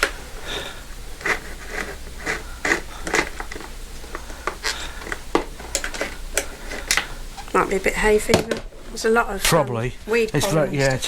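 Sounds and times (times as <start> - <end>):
steady low hum: 0.0 - 11.0
irregular scrapes and clicks: 1.2 - 7.6.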